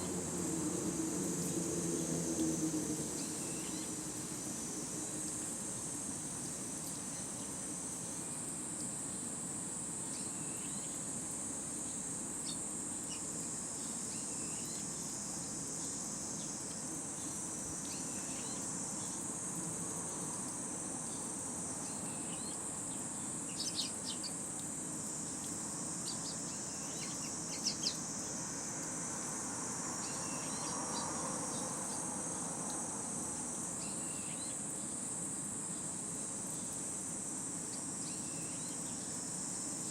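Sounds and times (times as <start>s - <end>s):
high-pitched insect drone: 26.0s - 34.7s.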